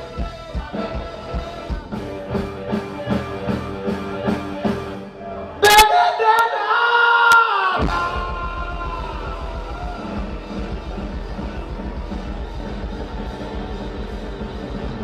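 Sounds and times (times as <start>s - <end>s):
music with beat and singing: 0.0s - 5.1s.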